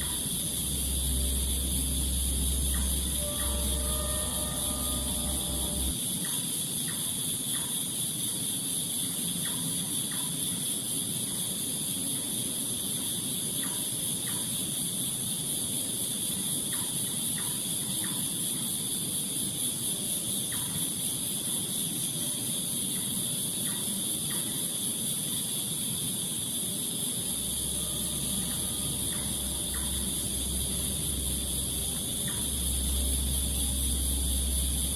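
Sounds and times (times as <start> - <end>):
low hum: 0.0 - 6.0, 27.2 - 34.9
musical tone: 0.0 - 6.0, 27.4 - 34.9
insects droning: 0.0 - 34.9.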